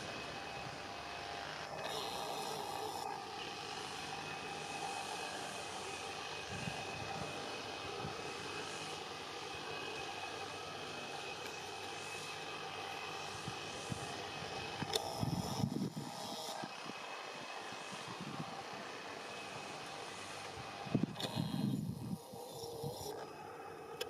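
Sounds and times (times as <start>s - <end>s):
train engine droning: 0.0s - 16.6s.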